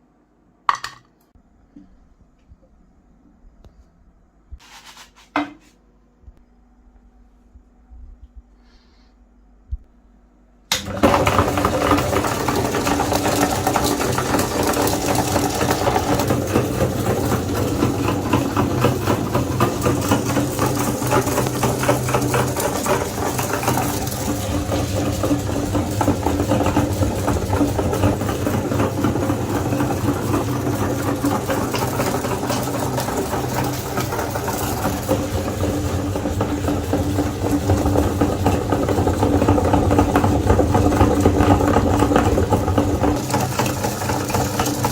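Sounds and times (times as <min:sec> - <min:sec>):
electric meat grinder running: 0:10.7 - 0:44.9
food crackling in grinder: 0:10.7 - 0:44.9.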